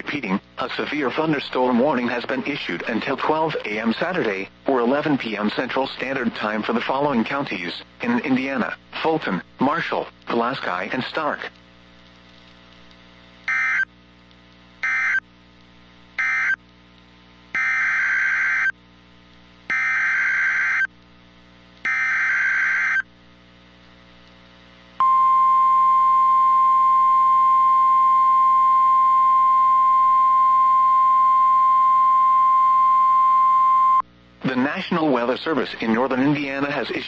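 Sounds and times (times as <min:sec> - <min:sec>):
steady warning alarm tone: 0:13.5 - 0:13.9, 0:14.8 - 0:15.2, 0:16.2 - 0:16.6, 0:17.6 - 0:18.7, 0:19.7 - 0:20.9, 0:21.9 - 0:23.0, 0:25.0 - 0:34.0.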